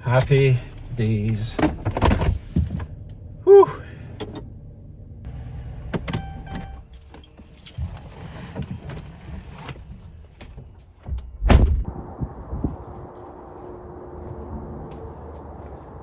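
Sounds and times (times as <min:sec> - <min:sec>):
truck door slamming: 0:11.4 - 0:11.9.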